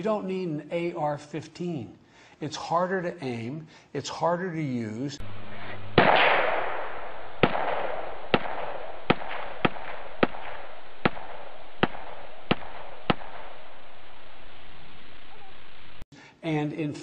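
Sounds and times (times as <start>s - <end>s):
gunshots: 5.2s - 14.3s
steady hiss: 5.2s - 16.4s.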